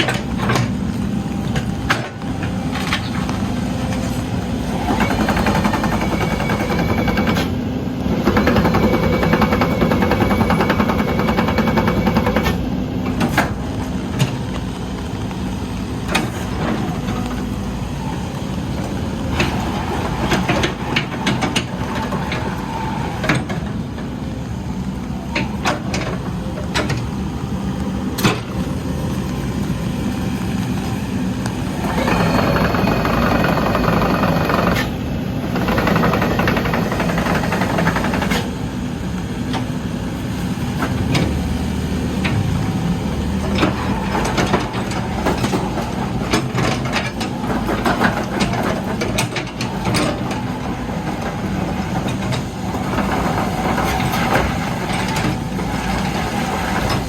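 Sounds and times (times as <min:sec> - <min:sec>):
excavator diesel engine running: 0:00.0 - 0:57.0.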